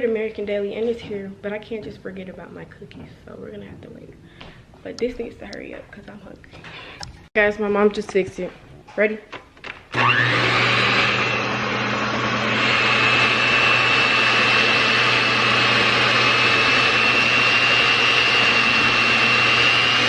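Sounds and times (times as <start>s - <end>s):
electric mixer whining: 9.6s - 20.0s.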